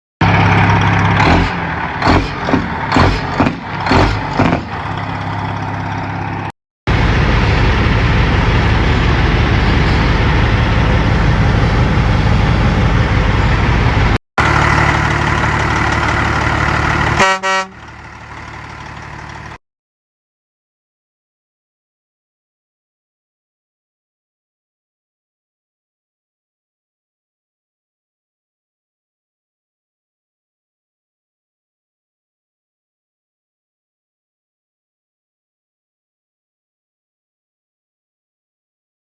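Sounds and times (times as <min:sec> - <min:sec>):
truck diesel engine running: 0:00.2 - 0:19.6
truck horn blasts: 0:16.8 - 0:18.2
train horn blast: 0:17.1 - 0:18.0.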